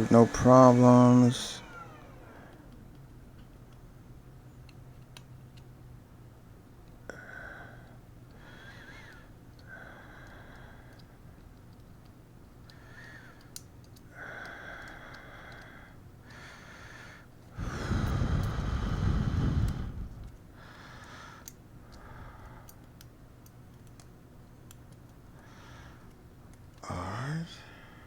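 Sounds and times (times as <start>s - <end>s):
person breathing through nose: 14.2s - 22.5s
rush of air: 17.6s - 20.3s.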